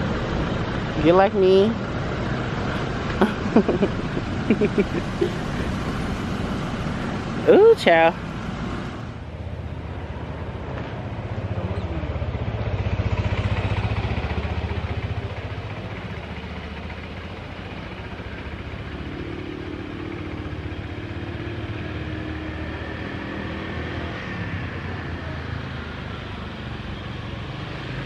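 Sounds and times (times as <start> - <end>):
motor scooter engine running: 3.1 - 7.8, 11.1 - 21.8.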